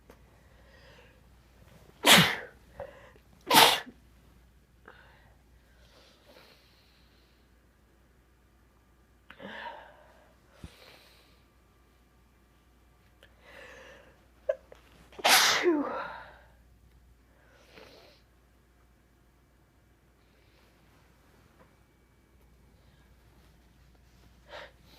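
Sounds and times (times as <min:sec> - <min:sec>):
person sneezing: 0:02.0 - 0:02.6, 0:03.5 - 0:04.0, 0:15.2 - 0:16.3.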